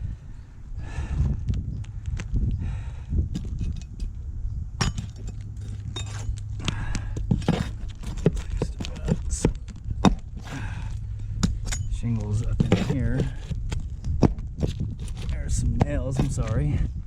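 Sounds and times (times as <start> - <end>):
steady low rumble: 0.0 - 17.0
shingle clicks and knocks: 4.8 - 16.6
scraping rustles: 4.8 - 17.0.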